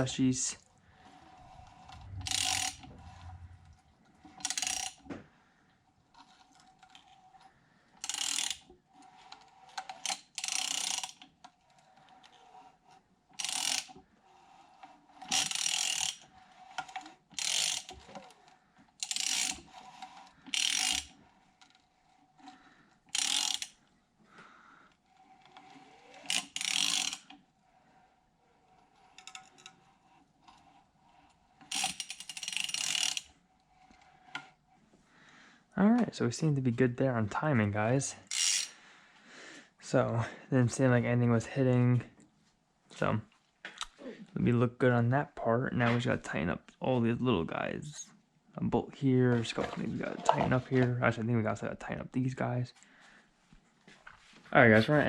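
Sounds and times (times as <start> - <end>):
hand ratchet clicking: 1.8 - 3.4, 4.4 - 5.0, 8.0 - 8.7, 9.8 - 11.3, 13.4 - 14.0, 15.3 - 16.2, 16.8 - 18.1, 19.0 - 19.8, 20.5 - 21.2, 23.1 - 23.8, 26.0 - 27.4, 31.6 - 33.3, 38.3 - 38.7.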